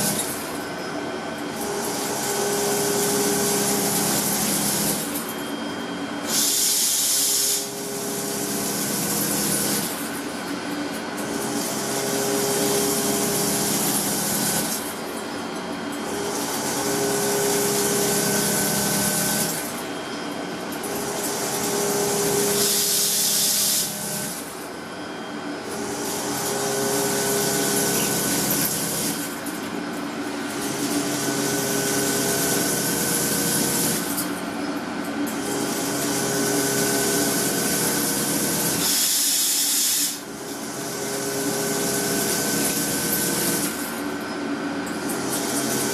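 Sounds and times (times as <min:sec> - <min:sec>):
machine tools humming: 0:00.0 - 0:45.9.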